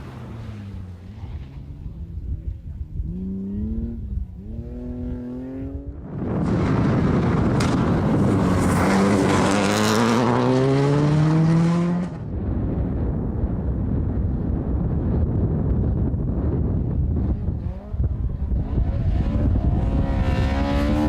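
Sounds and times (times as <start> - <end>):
rally car engine accelerating: 6.5 - 12.2, 16.5 - 21.0.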